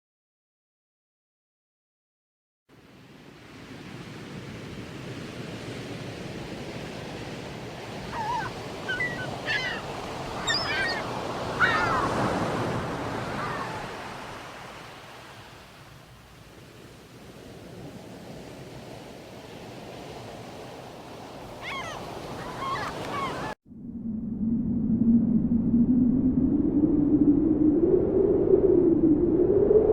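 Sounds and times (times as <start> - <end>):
sea waves washing on shore: 2.8 - 23.6
short sweeping bird calls: 8.1 - 12.5, 21.6 - 23.6.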